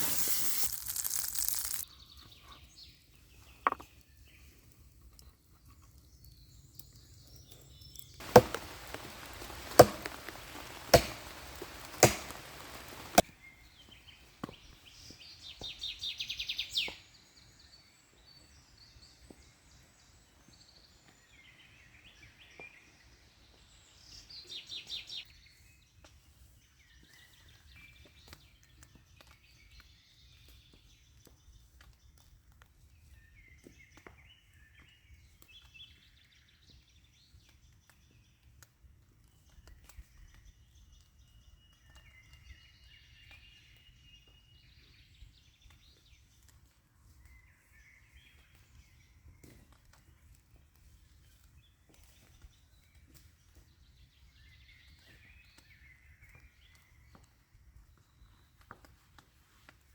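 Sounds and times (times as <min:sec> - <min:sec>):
small irregular clicks: 0:00.0 - 0:01.8.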